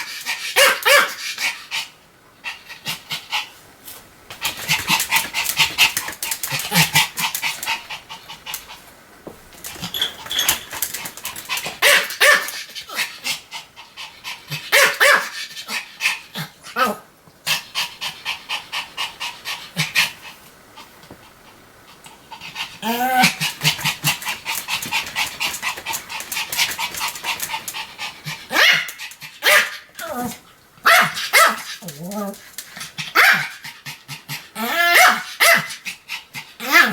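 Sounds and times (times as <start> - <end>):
small dog barking: 0.6 - 1.2, 11.8 - 12.5, 14.7 - 15.4, 28.5 - 29.9, 30.8 - 31.7, 33.2 - 33.5, 34.7 - 35.7
dog panting: 17.5 - 29.4.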